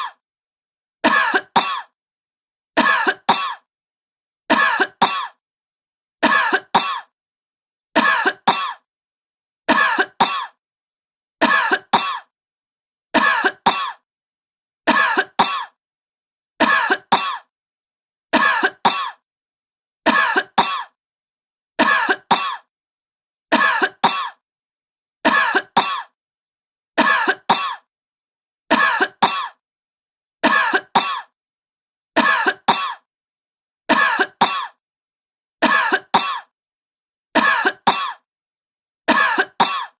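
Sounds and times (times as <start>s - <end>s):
woman coughing: 1.1s - 2.0s, 2.8s - 3.7s, 4.5s - 5.4s, 6.3s - 7.1s, 8.0s - 8.9s, 9.7s - 10.6s, 11.4s - 12.3s, 13.2s - 14.0s, 14.9s - 15.8s, 16.6s - 17.5s, 18.4s - 19.2s, 20.1s - 21.0s, 21.8s - 22.7s, 23.6s - 24.4s, 25.3s - 26.2s, 27.0s - 27.9s, 28.7s - 29.6s, 30.4s - 31.4s, 32.2s - 33.1s, 33.9s - 34.8s, 35.6s - 36.5s, 37.4s - 38.3s, 39.1s - 39.9s.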